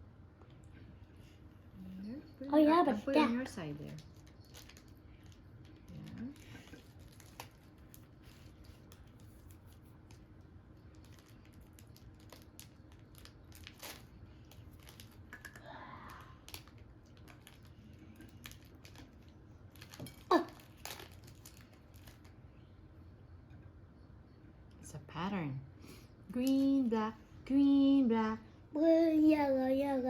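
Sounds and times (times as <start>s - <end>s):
plastic packet crinkling: 3.8s - 10.2s, 10.8s - 15.6s, 16.4s - 22.4s.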